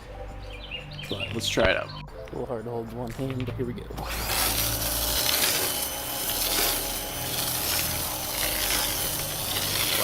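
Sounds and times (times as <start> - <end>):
pressure washer spraying foam: 4.0 - 10.0
pump humming: 4.0 - 10.0.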